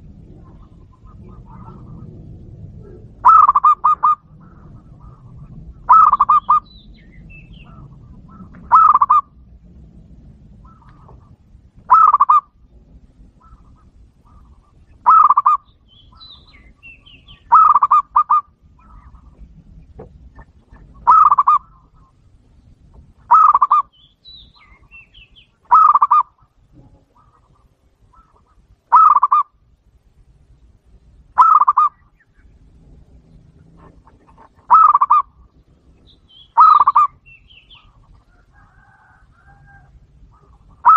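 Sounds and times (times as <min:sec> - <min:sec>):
large bird calling loudly: 0:00.3 - 0:09.4, 0:10.6 - 0:12.6, 0:13.3 - 0:19.5, 0:20.4 - 0:22.3, 0:23.2 - 0:29.6, 0:31.3 - 0:40.9
small bird chirps: 0:13.4 - 0:22.2, 0:23.3 - 0:26.3, 0:33.3 - 0:38.1.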